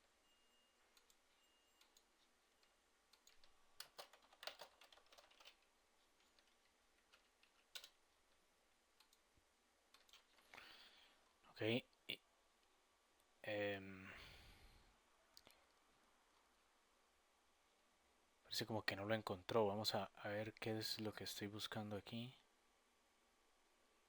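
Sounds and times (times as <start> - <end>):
computer keyboard keystrokes: 3.1 - 5.6, 6.4 - 8.0.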